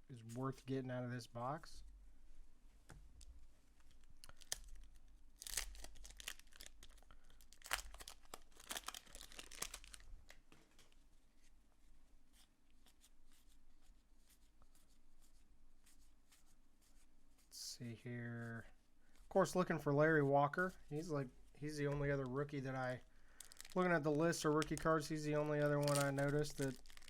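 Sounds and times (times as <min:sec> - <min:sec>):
wrapper tearing and crinkling: 0:04.2 - 0:10.1, 0:23.4 - 0:27.0.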